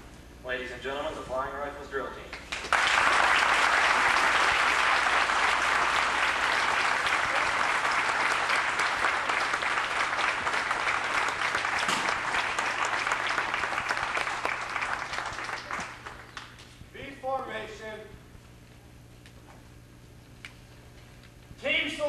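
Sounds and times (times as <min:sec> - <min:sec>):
audience applauding: 0:02.4 - 0:16.6.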